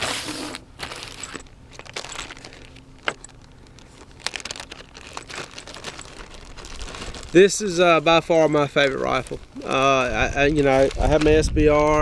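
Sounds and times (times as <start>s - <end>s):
rifle handling clicks and rustles: 1.0s - 6.4s.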